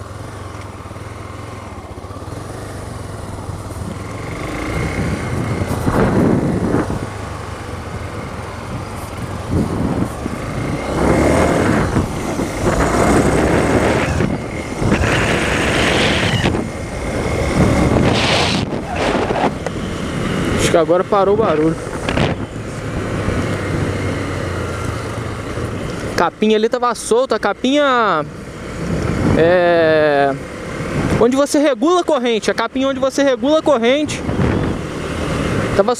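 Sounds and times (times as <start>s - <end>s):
motorcycle engine running: 0.0s - 27.1s.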